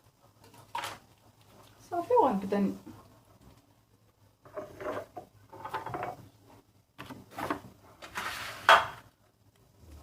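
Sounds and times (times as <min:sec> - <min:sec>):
kitchen utensils and dishes clattering: 0:04.4 - 0:06.2, 0:07.3 - 0:09.1.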